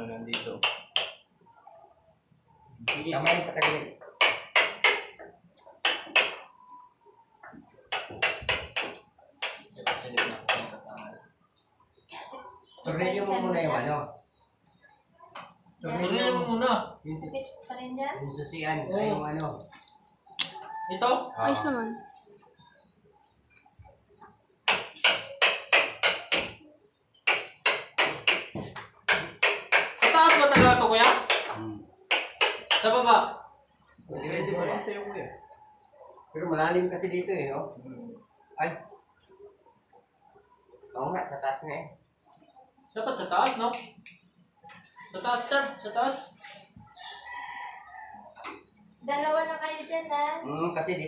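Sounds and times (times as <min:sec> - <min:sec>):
hammer blows on wooden door: 0:02.9 - 0:05.2, 0:07.9 - 0:10.7, 0:24.7 - 0:26.6, 0:27.3 - 0:33.0.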